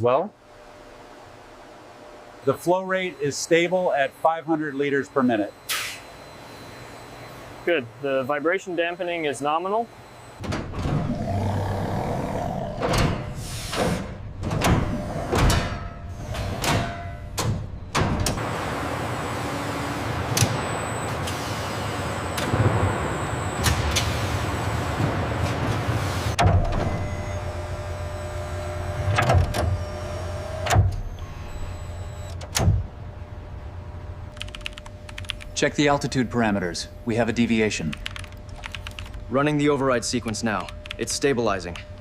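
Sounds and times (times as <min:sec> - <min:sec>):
machinery hum with whine: 0:00.0 - 0:42.0
machinery hissing knocks and clanks: 0:12.7 - 0:18.4
low industrial hum: 0:29.8 - 0:42.0.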